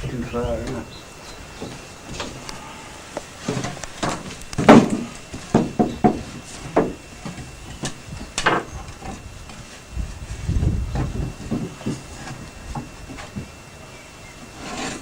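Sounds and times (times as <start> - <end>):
wooden knocks bumps and scrapes: 1.5 - 2.4, 3.2 - 13.6.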